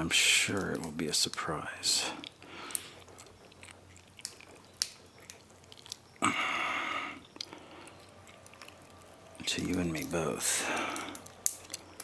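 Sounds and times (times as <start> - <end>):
lock picks clicking and scraping: 7.3 - 12.0.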